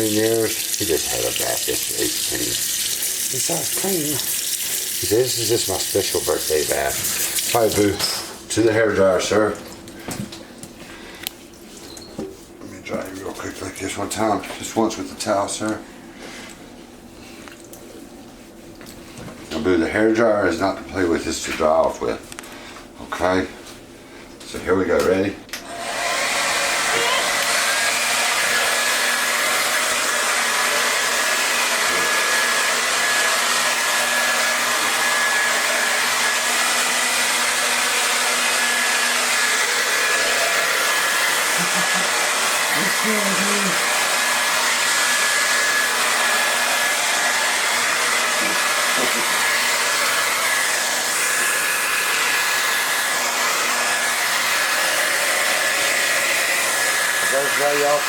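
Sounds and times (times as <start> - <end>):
hair dryer running: 0.0 - 10.8, 25.5 - 58.0.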